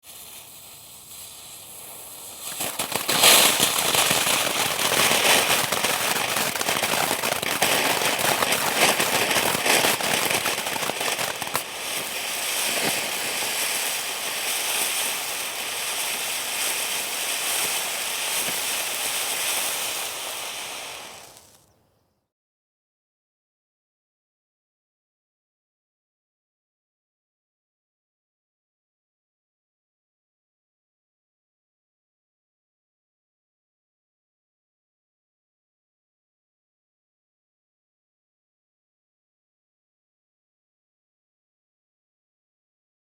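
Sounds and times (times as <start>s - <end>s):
firework fountain crackling and hissing: 0.0s - 21.7s.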